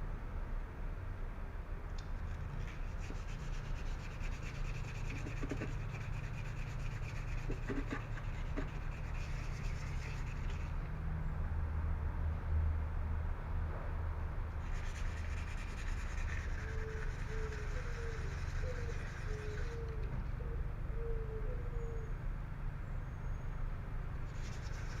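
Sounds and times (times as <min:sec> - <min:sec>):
sandpaper rubbing on car panel: 0:02.5 - 0:10.7, 0:14.6 - 0:19.9, 0:24.3 - 0:25.0.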